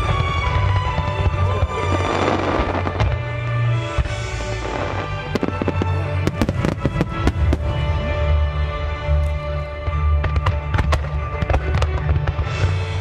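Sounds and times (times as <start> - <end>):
fireworks crackling and popping: 0.0 - 13.0
music: 0.0 - 13.0.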